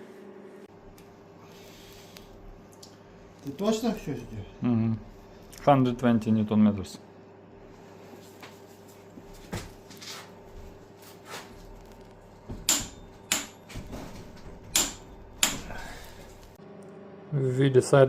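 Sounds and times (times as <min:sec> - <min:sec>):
hand tools knocking on metal: 0:12.5 - 0:16.0.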